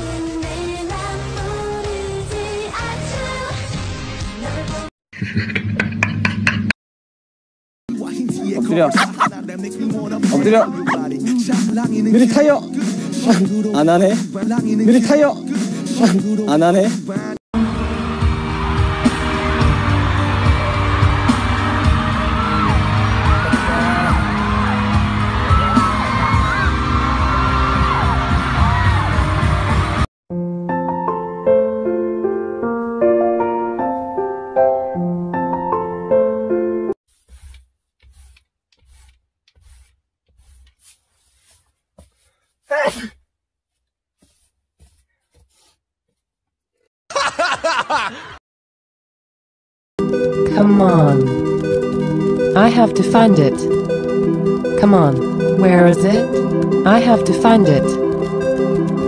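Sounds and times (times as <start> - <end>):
pop music with steady beat: 7.9 - 17.4
voices gliding up and down: 8.5 - 9.6
people laughing loudly: 8.8 - 9.3, 47.1 - 48.4.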